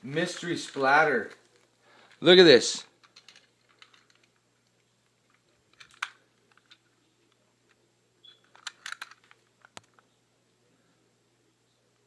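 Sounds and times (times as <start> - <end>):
plastic toy clicking: 8.5 - 9.9.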